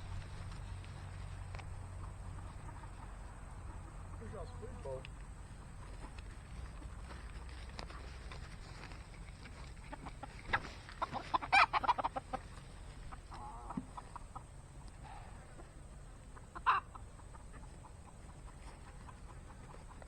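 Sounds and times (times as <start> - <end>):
chickens clucking: 0.0 - 20.0.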